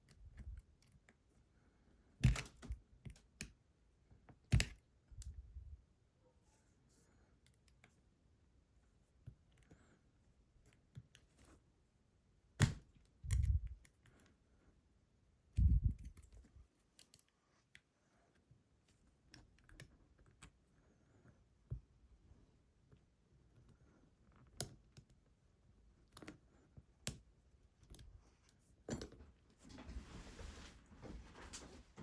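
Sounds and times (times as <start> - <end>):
lock picking clicks and scrapes: 12.6 - 14.4, 15.6 - 17.4.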